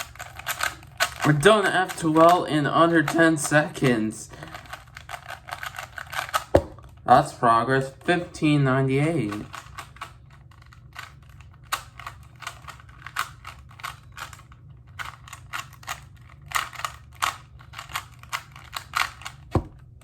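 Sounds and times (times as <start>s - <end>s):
plastic puzzle cube clicking: 9.3s - 19.5s.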